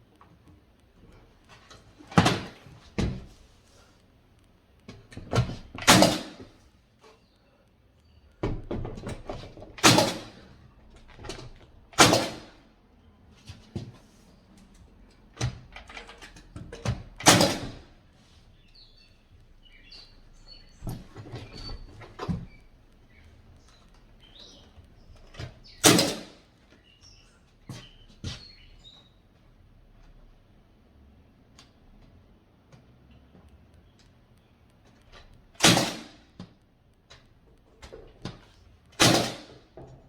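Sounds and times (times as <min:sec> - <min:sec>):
knocks and thuds on wood: 0:08.4 - 0:10.4.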